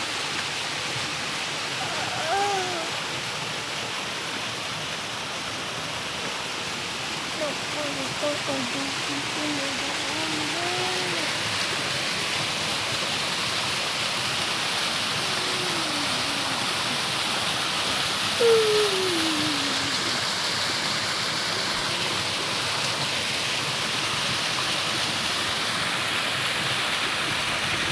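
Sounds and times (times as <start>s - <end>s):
waterfall rushing: 0.0s - 27.9s
falling voice-like call: 1.8s - 3.0s, 7.4s - 11.4s, 15.1s - 17.2s, 18.4s - 20.3s.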